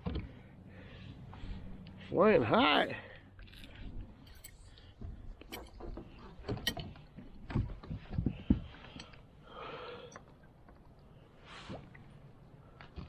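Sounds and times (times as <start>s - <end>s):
fishing gear clicks and knocks: 3.4s - 9.2s.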